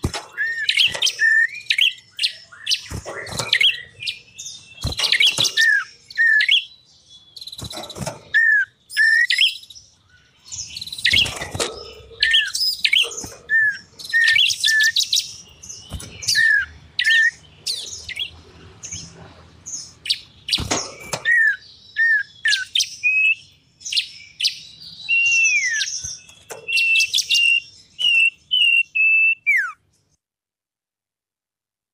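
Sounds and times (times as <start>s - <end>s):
harsh scratchy bird chatter: 0.0s - 6.7s, 10.5s - 23.3s
songbirds calling: 0.0s - 30.2s.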